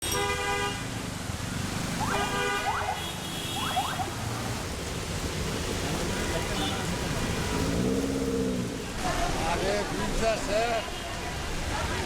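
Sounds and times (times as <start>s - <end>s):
vehicle horns: 0.0s - 0.9s, 2.0s - 4.1s
traffic noise: 0.0s - 12.0s.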